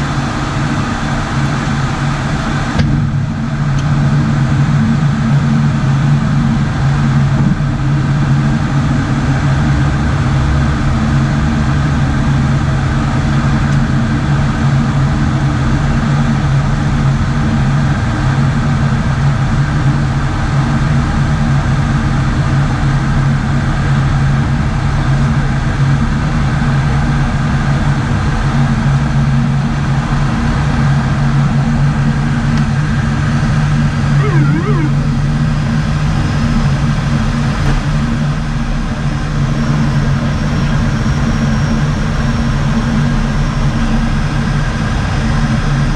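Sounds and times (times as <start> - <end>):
turboprop engines droning: 34.0 - 35.6.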